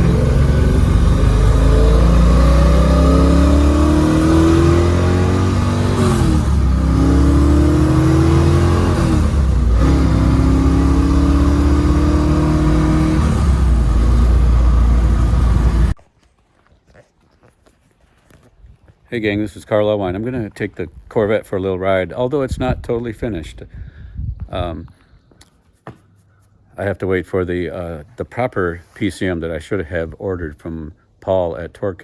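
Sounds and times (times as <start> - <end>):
car engine accelerating: 0.0 - 16.0.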